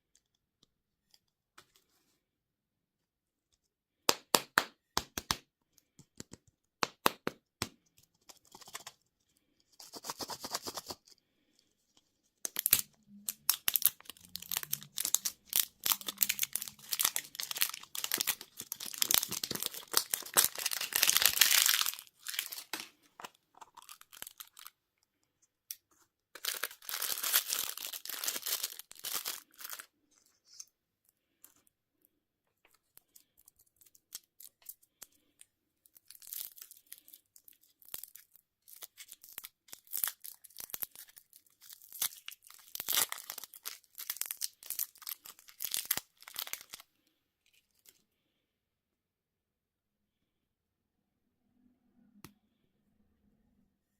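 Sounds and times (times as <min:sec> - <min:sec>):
candy wrappers tearing and crinkling: 0:12.5 - 0:24.8, 0:26.4 - 0:29.9, 0:33.0 - 0:35.3, 0:35.9 - 0:46.9.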